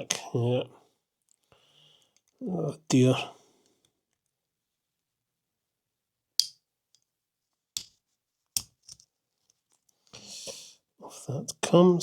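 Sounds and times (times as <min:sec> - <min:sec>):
small tool clicks and taps: 0:06.4 - 0:06.6.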